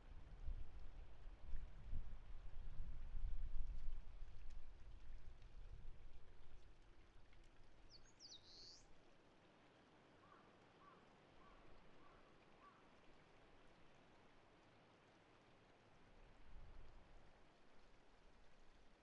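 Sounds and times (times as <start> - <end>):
faint short bird chirps: 7.9 - 8.8.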